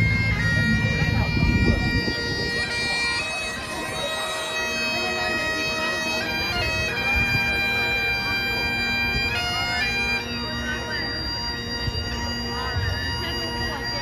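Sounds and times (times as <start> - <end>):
bagpipes playing: 0.0 - 14.0.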